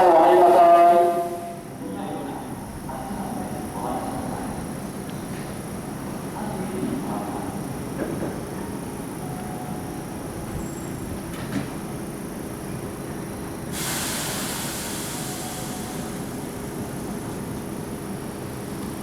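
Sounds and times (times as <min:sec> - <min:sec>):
electric train low rumble: 0:00.0 - 0:19.0
compressed air hiss: 0:13.7 - 0:17.5.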